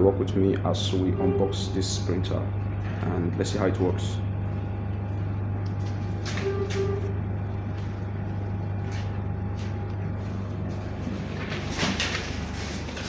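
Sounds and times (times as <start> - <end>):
steady low hum: 0.0 - 13.0
handling knocks and rustles: 8.8 - 13.0.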